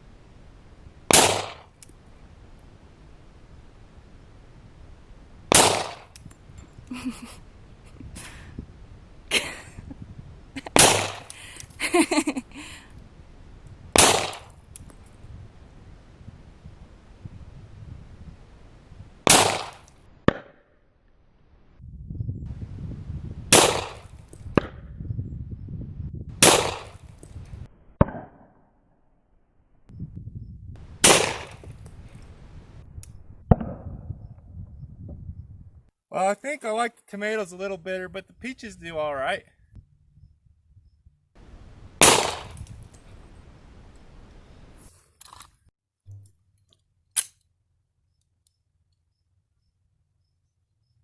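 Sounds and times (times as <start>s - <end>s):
pistol shots: 1.1s - 1.6s, 5.5s - 6.1s, 10.8s - 11.3s, 14.0s - 14.5s, 19.3s - 20.5s, 23.5s - 24.8s, 26.4s - 27.0s, 31.0s - 31.7s, 42.0s - 42.7s.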